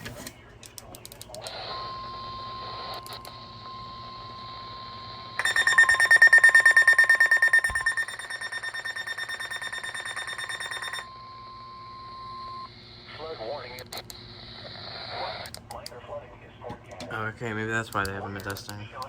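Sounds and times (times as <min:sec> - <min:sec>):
rapid pulsing alarm beeps: 0:01.7 - 0:12.7
steady alarm tone: 0:01.7 - 0:12.7.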